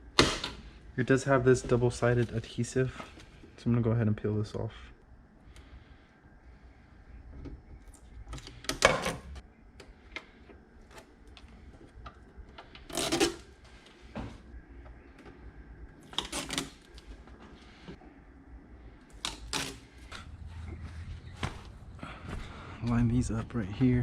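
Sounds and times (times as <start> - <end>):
tape backing film ripping: 16.0 - 17.0.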